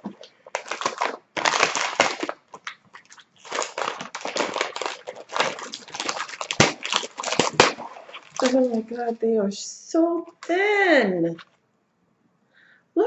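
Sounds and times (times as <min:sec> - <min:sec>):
plastic wrapper crinkling: 0:00.0 - 0:09.2, 0:10.2 - 0:10.6.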